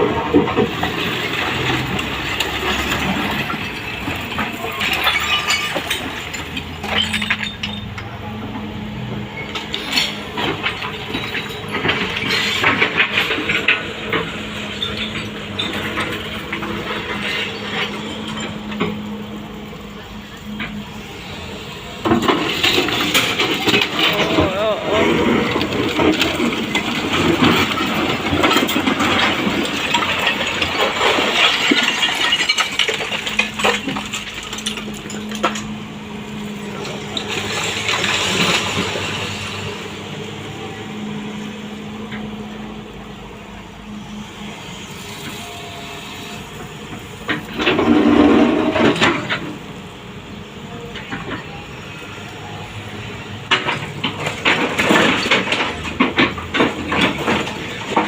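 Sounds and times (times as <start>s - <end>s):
debris crash: 0.0s - 8.2s, 9.4s - 19.1s, 22.0s - 39.9s, 46.8s - 49.7s, 53.2s - 58.0s
rubble scraping and clattering: 0.0s - 39.9s, 46.2s - 49.8s, 53.0s - 58.0s
diesel engine running: 0.0s - 58.0s.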